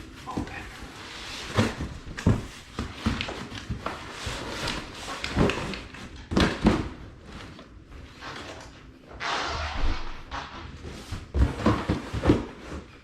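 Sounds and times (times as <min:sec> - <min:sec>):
box knocks and thumps: 0:11.1 - 0:13.0.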